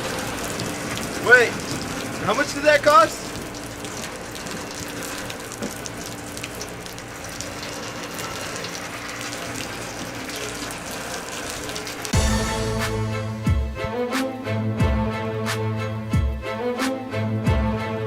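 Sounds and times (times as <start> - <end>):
steady rain: 0.0 - 12.6
music with strings: 12.2 - 18.0.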